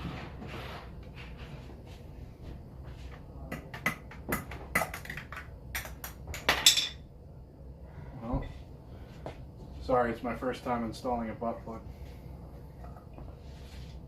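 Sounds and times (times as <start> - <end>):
faint low hum: 0.0 - 14.0.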